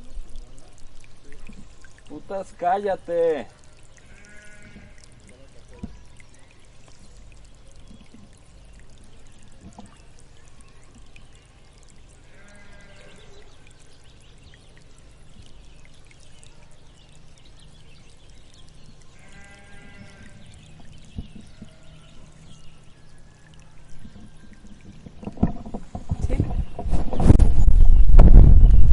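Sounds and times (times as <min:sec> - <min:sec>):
sheep bleating: 0:04.0 - 0:04.9, 0:12.3 - 0:13.2, 0:19.2 - 0:20.4.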